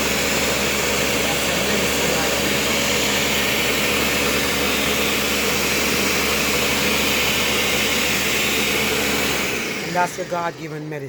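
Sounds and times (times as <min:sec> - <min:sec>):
blender running: 0:00.0 - 0:11.0.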